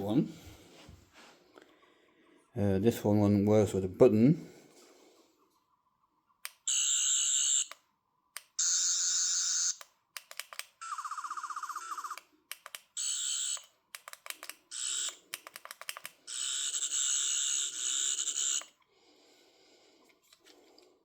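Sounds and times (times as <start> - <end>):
toy electronic sound effect: 10.8 - 12.2.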